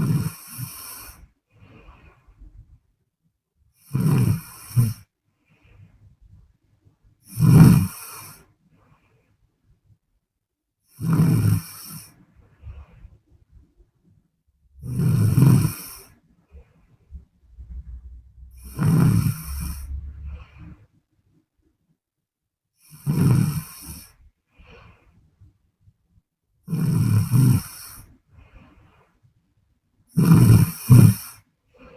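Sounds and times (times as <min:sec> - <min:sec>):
woman snoring: 0:00.0 - 0:01.2, 0:03.8 - 0:05.1, 0:07.3 - 0:08.4, 0:10.9 - 0:12.1, 0:14.8 - 0:16.2, 0:18.5 - 0:20.7, 0:22.8 - 0:24.2, 0:26.7 - 0:28.1, 0:30.1 - 0:31.9
quiet breathing: 0:00.0 - 0:02.8, 0:03.7 - 0:10.0, 0:10.9 - 0:21.1, 0:22.8 - 0:25.6, 0:26.8 - 0:29.4, 0:30.1 - 0:31.9.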